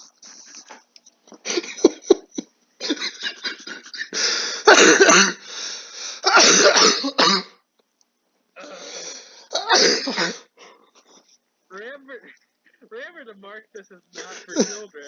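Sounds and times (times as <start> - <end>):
person coughing: 2.8 - 5.4, 6.2 - 7.6, 8.6 - 10.5, 14.2 - 14.9.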